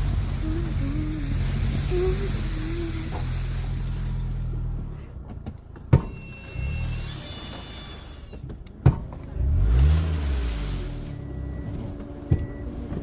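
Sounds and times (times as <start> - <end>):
high-pitched brake squeals: 0.0 - 4.4, 6.0 - 8.5, 10.9 - 12.7
car engine driving: 0.0 - 13.0.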